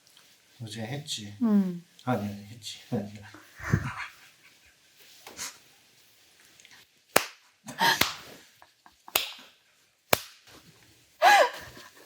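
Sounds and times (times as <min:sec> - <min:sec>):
hands slapping body: 0:07.1 - 0:08.4, 0:09.1 - 0:09.5, 0:10.1 - 0:10.5.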